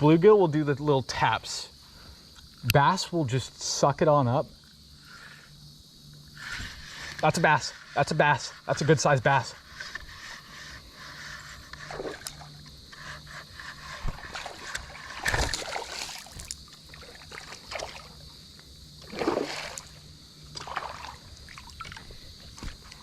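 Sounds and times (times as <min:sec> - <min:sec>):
water splashing and sloshing: 0:11.2 - 0:23.0
loud splashes: 0:15.2 - 0:18.2, 0:19.0 - 0:20.0, 0:20.6 - 0:22.0.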